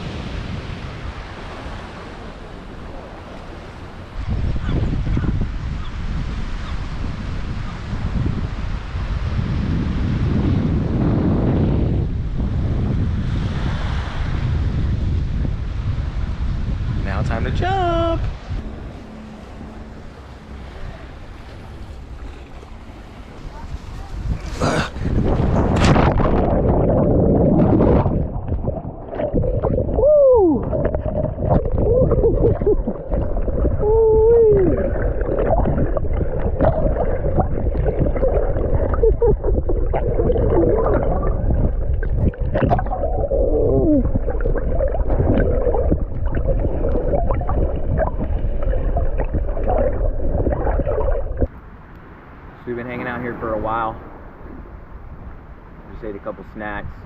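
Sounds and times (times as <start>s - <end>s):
underwater bubbling churn: 24.1s - 51.6s.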